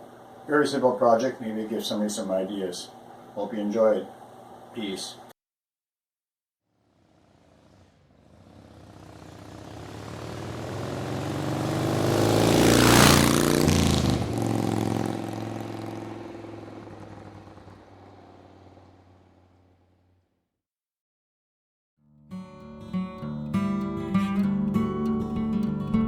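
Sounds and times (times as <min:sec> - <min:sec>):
vehicle engine passing by: 0:06.7 - 0:20.1.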